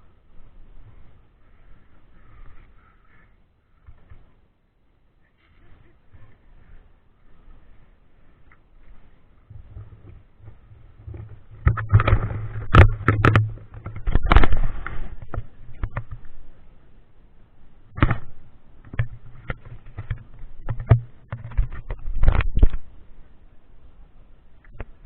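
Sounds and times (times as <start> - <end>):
rustling: 5.2 - 16.7.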